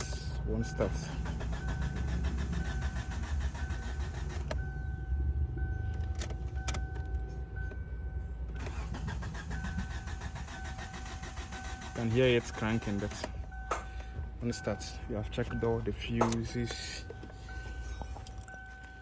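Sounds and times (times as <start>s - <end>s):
starter motor cranking engine: 0.0s - 4.7s, 8.6s - 13.4s.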